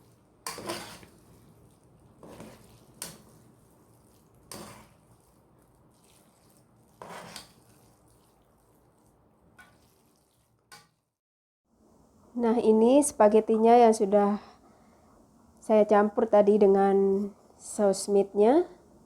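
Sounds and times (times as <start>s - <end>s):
utensil scraping a cooking pot: 0.0s - 11.0s.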